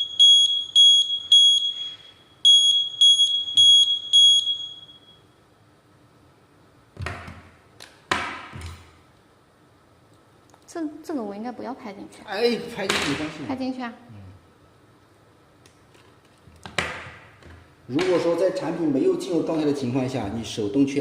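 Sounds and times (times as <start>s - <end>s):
shrill alarm beeps: 0.0s - 5.4s.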